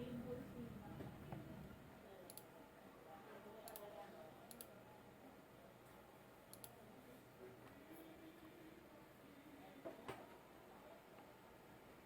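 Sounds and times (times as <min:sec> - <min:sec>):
computer mouse clicks: 0:02.2 - 0:02.5, 0:03.6 - 0:03.9, 0:04.5 - 0:04.7, 0:06.5 - 0:06.8.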